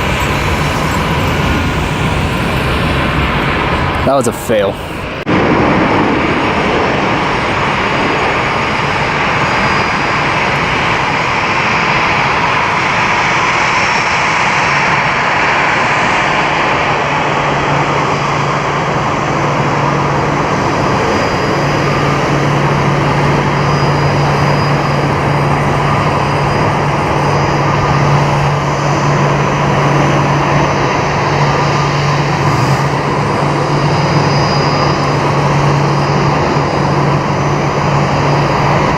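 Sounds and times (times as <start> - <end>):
low hum: 0.0 - 10.8
jet engines running: 0.0 - 38.9.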